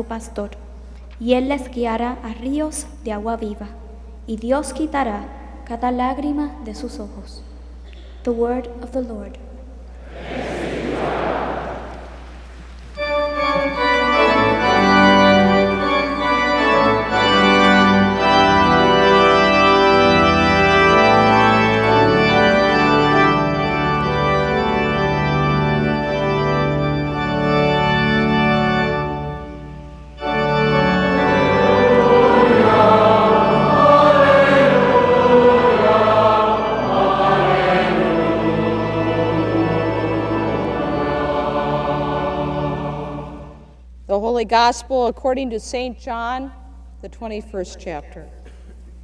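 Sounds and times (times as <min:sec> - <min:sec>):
choir singing: 0:10.0 - 0:29.5, 0:30.2 - 0:43.8
organ playing chords: 0:10.1 - 0:43.8.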